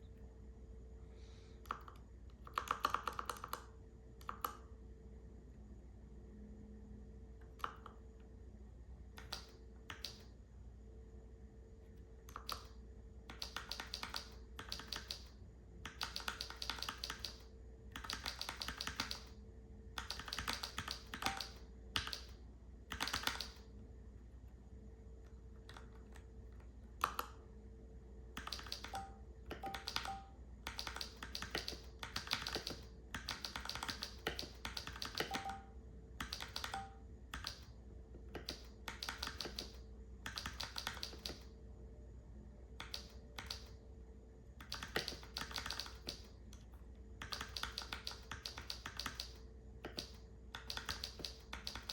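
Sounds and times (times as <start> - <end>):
mechanical keyboard typing: 1.6 - 4.6, 9.2 - 10.3, 12.2 - 23.7, 27.0 - 27.4, 28.3 - 37.7, 38.3 - 41.5, 42.8 - 43.8, 44.6 - 51.9.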